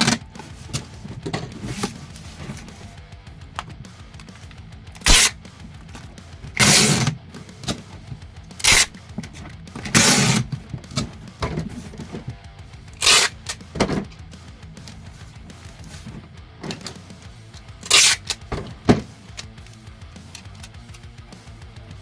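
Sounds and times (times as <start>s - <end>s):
packing materials being handled: 0.0s - 3.0s
background music: 0.0s - 22.0s.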